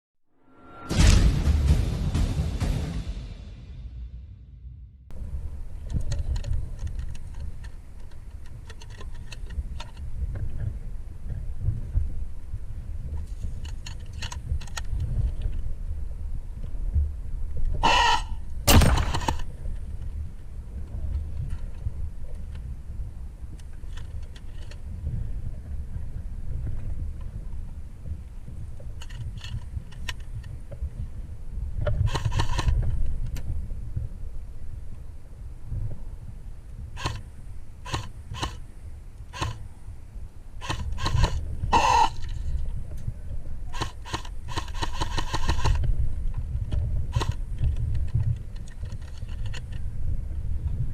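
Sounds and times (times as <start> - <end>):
low rumble: 0.3 - 8.7
low wind rumble: 0.4 - 50.9
short harsh cry: 17.8 - 18.4
airsoft gun burst: 17.9 - 19.4, 37.0 - 37.2, 37.8 - 38.6, 39.3 - 39.6, 40.6 - 42.2, 43.7 - 45.8.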